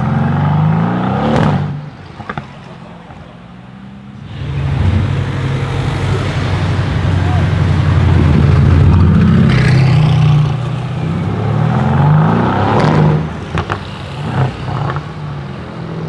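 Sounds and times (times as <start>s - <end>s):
car engine accelerating: 3.8s - 16.0s
exhaust crackles: 4.2s - 16.0s.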